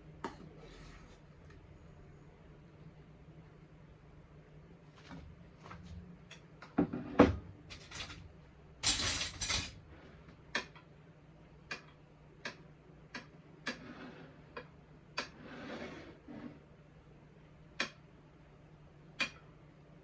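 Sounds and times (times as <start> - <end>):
utensils clicking and tapping: 7.7 - 9.8, 19.2 - 19.4.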